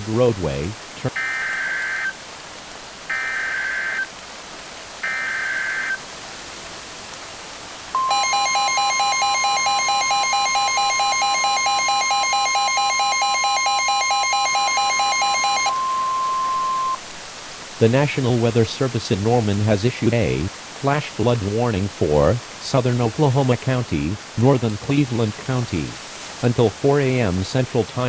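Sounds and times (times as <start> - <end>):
pulsing buzzy alarm tone: 8.0 - 17.0
steady high tone: 8.0 - 17.0
warbling data tones: 8.0 - 17.0.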